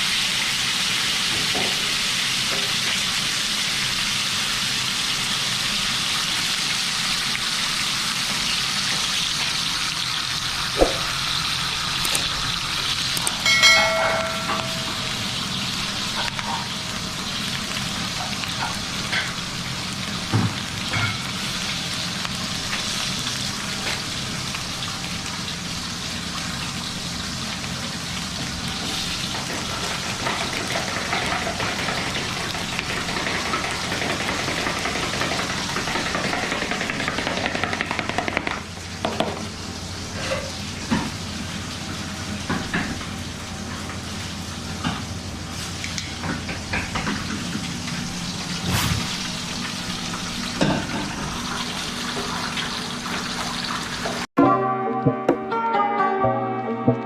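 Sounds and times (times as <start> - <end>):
food sizzling in hot oil: 0.0 - 37.8
utensils knocking cookware: 13.2 - 15.3.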